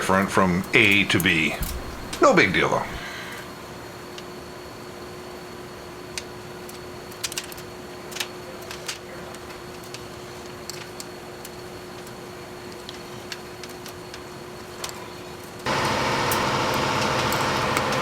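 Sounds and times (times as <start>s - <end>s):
steady hum: 0.0s - 3.9s
light clicks of small parts handled: 6.2s - 14.2s.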